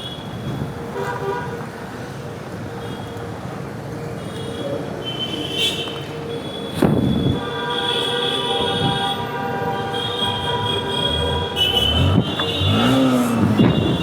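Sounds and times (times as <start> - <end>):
street traffic: 0.0 - 14.0
vehicle horns honking: 4.2 - 14.0.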